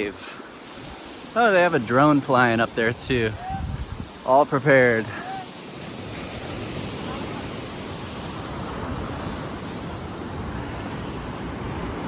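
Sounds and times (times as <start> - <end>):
ocean surf washing: 0.0 - 12.0
wind on the microphone: 2.7 - 4.4.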